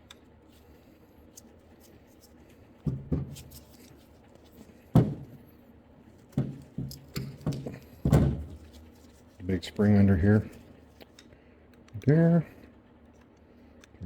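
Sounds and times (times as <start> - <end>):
metal parts knocking and clicking: 6.3 - 8.7.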